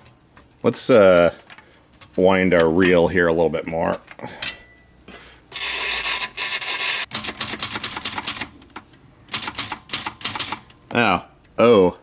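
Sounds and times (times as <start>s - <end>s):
typewriter ribbon reel rasping: 5.6s - 8.7s, 9.3s - 10.7s
typewriter keystrokes: 7.1s - 10.8s.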